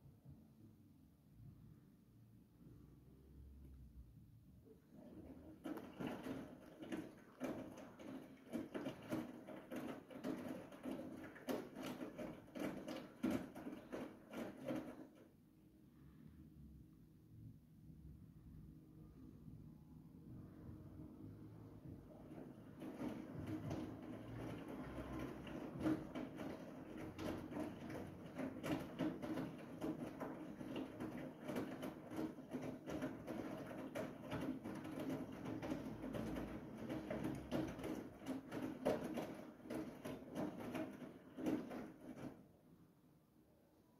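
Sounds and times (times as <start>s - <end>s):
washing machine drum turning: 5.0s - 15.2s, 21.8s - 42.4s
laundry knocking in drum: 5.4s - 15.2s, 21.9s - 42.4s.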